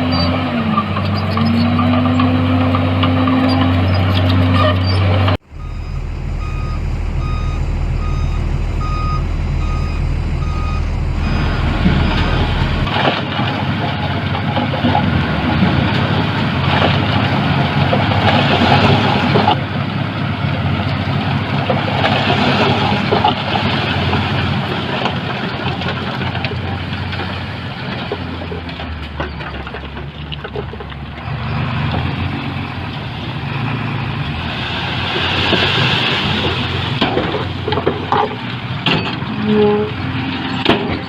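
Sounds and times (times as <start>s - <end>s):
diesel engine running: 0.0s - 41.0s
reversing alarm beeping: 5.5s - 12.9s.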